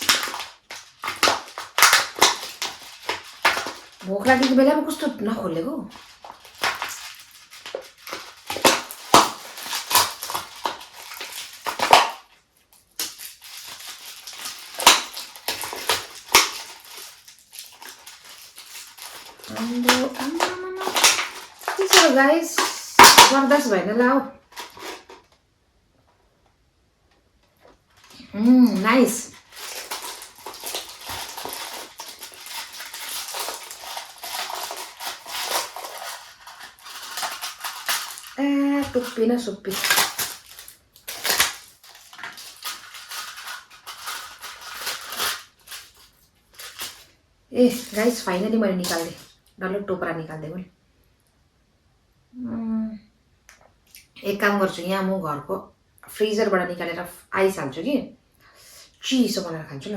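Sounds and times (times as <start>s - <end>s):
cling wrap crinkling and tearing: 0.0s - 23.8s, 24.4s - 25.4s, 27.5s - 49.5s.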